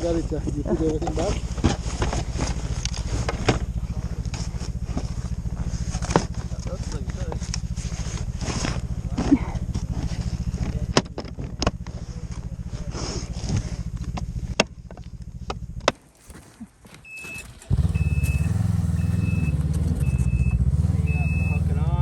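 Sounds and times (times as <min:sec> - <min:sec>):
snowmobile engine: 0:00.0 - 0:22.0
reverse warning beeper: 0:16.9 - 0:22.0.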